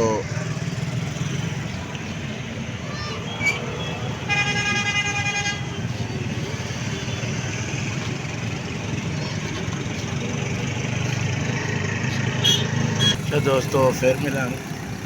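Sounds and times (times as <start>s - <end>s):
road traffic: 0.0s - 15.0s
vehicle horn blaring: 12.4s - 13.3s.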